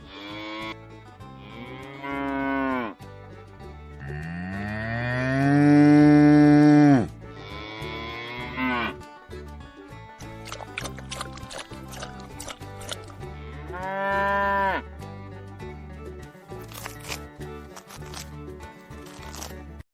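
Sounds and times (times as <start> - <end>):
cattle mooing: 4.0 - 9.0, 13.7 - 14.8.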